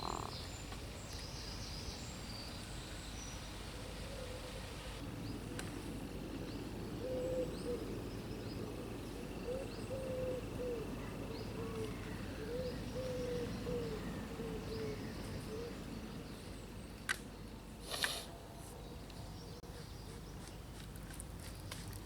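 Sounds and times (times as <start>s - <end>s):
small birds chirping: 0.0s - 5.4s
low wind rumble: 0.0s - 17.7s
pigeon cooing: 9.5s - 11.0s, 11.6s - 15.8s.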